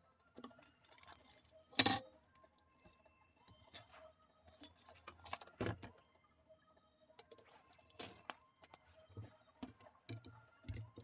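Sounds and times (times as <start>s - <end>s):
small hard parts clinking: 0.8s - 2.2s.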